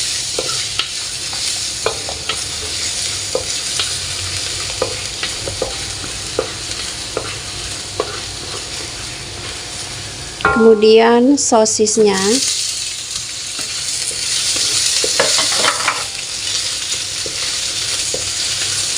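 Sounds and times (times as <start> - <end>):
garlic sizzling in hot oil: 0.0 - 18.9
spatula scraping a pan: 4.8 - 9.5, 13.6 - 18.8.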